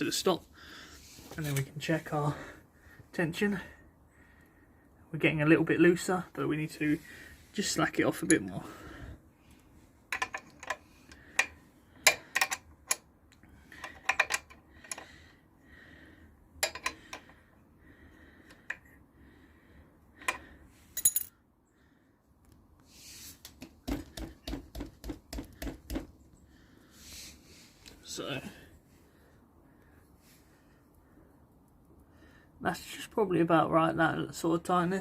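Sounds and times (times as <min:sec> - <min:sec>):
hand tools clicking on metal: 0:10.1 - 0:15.1, 0:16.6 - 0:17.3.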